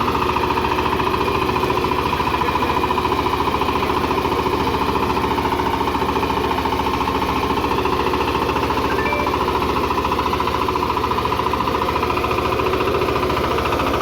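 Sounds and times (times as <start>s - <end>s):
diesel engine chugging: 0.0s - 14.0s.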